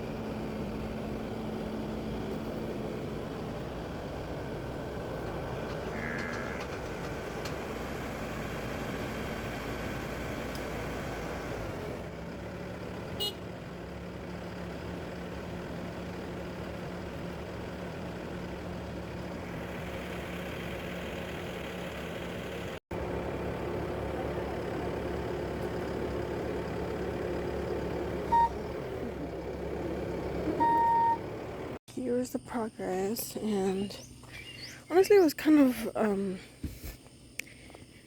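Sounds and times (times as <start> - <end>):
heavy machine engine running: 0.0 - 31.8
short loud beep: 30.6 - 31.2.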